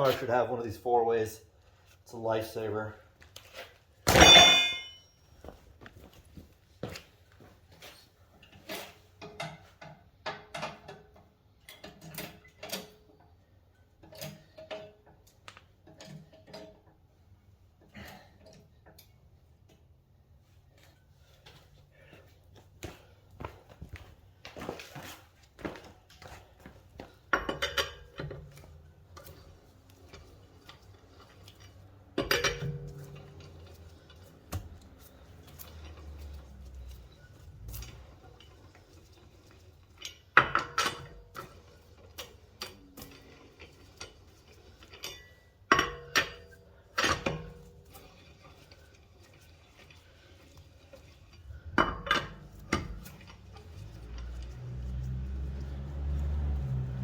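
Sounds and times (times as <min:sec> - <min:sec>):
metal wrench clanking: 0:04.1 - 0:05.2, 0:32.2 - 0:34.0.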